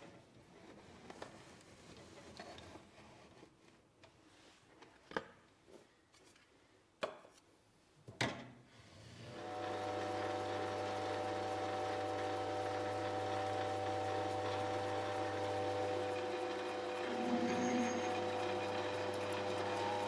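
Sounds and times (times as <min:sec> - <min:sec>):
electric motor humming and whining: 0:09.4 - 0:20.0.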